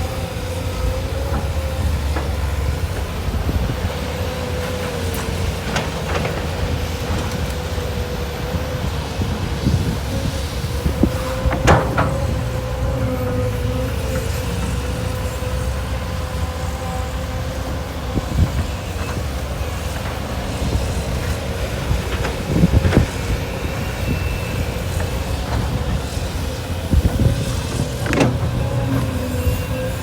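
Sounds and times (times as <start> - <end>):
excavator diesel engine running: 0.0 - 30.0
hydraulic whine: 0.0 - 30.0
heavy knocks and clanks: 10.9 - 15.0, 25.0 - 30.0.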